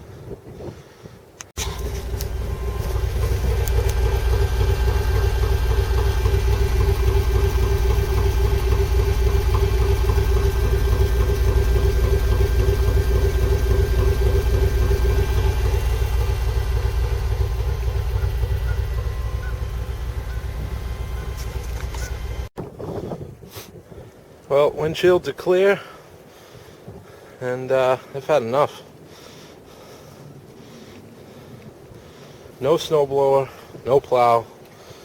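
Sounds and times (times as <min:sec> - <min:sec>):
pickup truck engine idling: 0:01.6 - 0:22.5.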